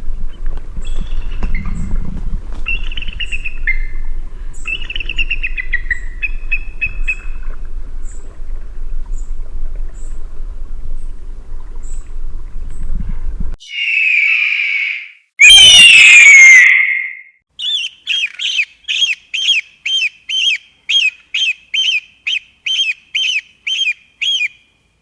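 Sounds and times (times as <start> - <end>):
eagle calling: 13.6 - 24.6.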